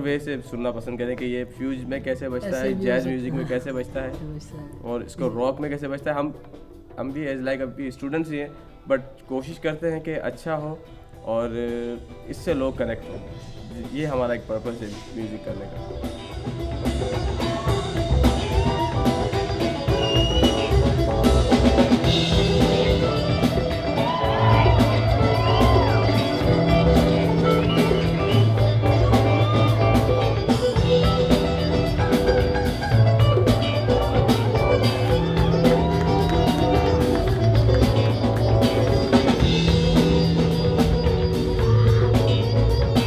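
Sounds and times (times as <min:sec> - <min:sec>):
drum kit steady beat: 0:14.9 - 0:43.0
gliding bending melody: 0:15.9 - 0:43.0
bass line of long notes: 0:16.4 - 0:43.0.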